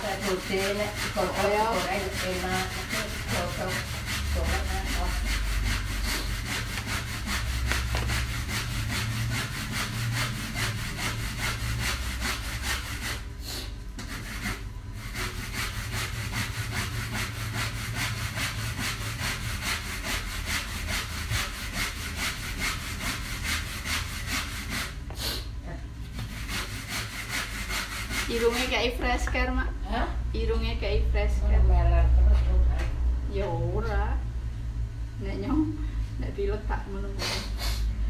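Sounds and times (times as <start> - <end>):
rhythmic scraping: 0.0 - 13.3.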